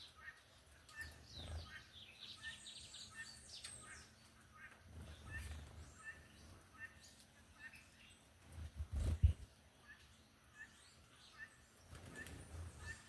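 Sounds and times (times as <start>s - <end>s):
small birds chirping: 0.0s - 13.0s.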